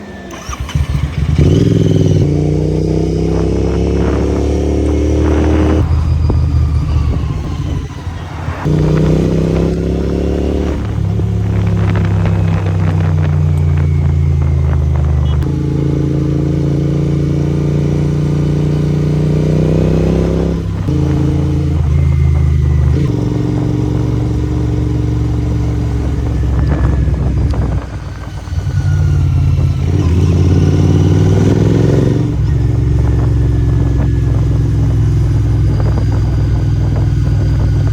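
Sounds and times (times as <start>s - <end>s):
motorcycle engine and exhaust running: 0.0s - 37.9s.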